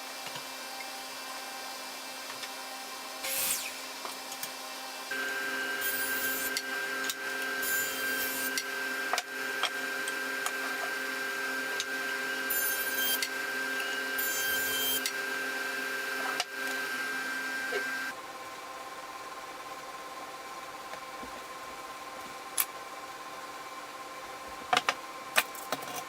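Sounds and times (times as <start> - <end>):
small electric motor running: 3.2 - 18.2.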